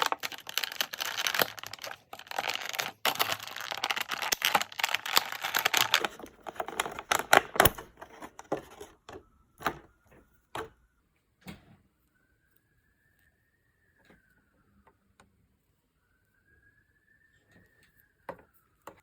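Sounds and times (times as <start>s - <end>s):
plastic packaging crinkling: 0.0s - 9.9s.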